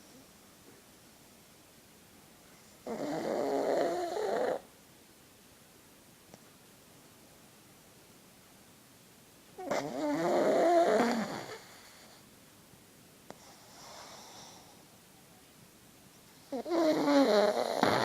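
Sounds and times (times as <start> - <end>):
dog snoring: 2.8 - 4.7, 9.6 - 12.2, 13.3 - 14.8, 16.4 - 18.0.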